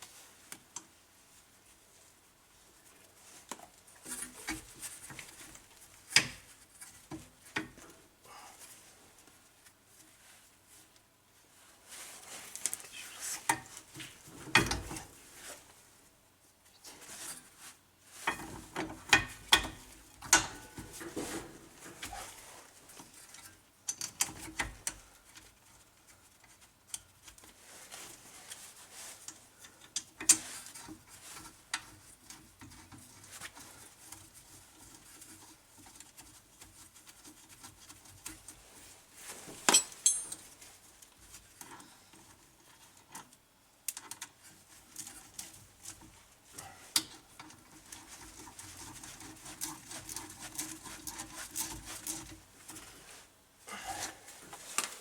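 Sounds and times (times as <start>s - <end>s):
metallic clinks of hand tools: 39.7s - 40.4s.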